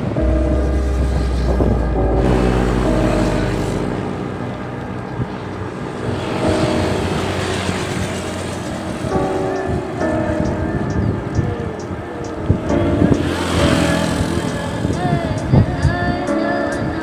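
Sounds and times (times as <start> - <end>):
deep rumble: 0.0 - 9.3
background music: 0.0 - 17.0
road traffic: 0.0 - 17.0.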